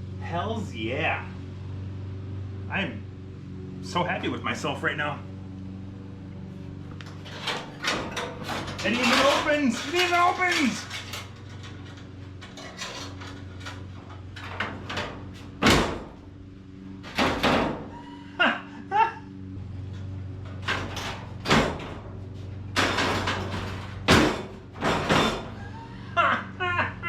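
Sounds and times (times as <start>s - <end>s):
low hum: 0.0s - 26.2s
car hood clanking shut: 7.1s - 16.3s, 17.0s - 18.0s, 22.7s - 25.6s.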